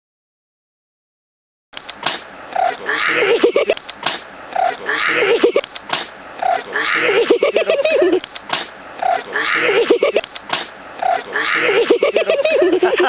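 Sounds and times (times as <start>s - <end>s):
llama wavering cry: 2.5s - 3.7s, 4.5s - 5.6s, 6.4s - 8.2s, 9.0s - 10.2s, 11.0s - 12.8s.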